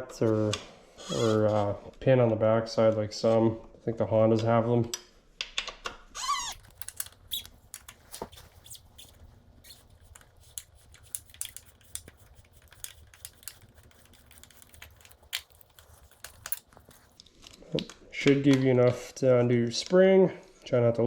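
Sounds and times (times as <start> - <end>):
hand tools clicking and tapping: 6.6 - 8.8, 9.6 - 17.2.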